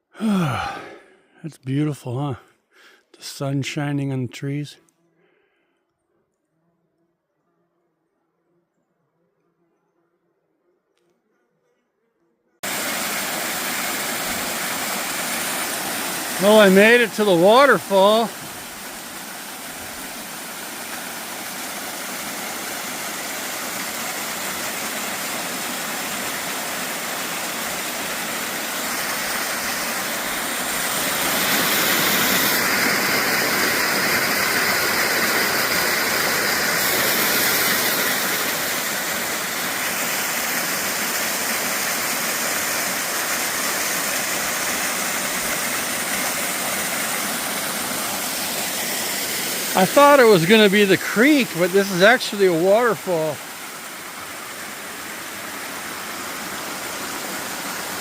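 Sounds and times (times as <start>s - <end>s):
waterfall rushing: 12.6s - 58.0s.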